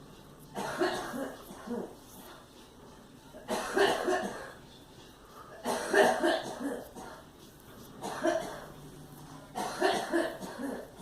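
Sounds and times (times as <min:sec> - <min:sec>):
girl coughing: 0:03.5 - 0:04.6, 0:05.6 - 0:07.2, 0:08.0 - 0:08.7, 0:09.6 - 0:11.0.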